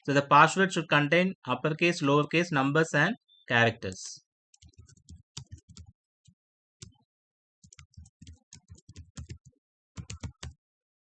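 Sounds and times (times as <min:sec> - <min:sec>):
computer keyboard typing: 0:04.6 - 0:05.9, 0:07.6 - 0:10.6.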